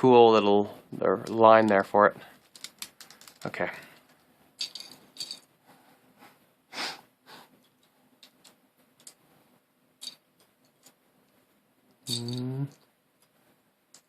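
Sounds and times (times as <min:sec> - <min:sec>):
plastic pieces clicking: 0:02.4 - 0:05.4
person humming: 0:12.1 - 0:12.8.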